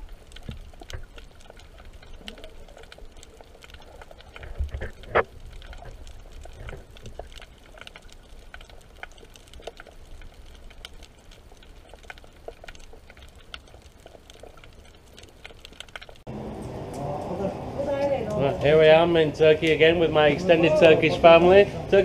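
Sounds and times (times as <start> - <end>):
faint clicks and taps: 0.0 - 16.2
low steady water rumble: 0.0 - 17.0.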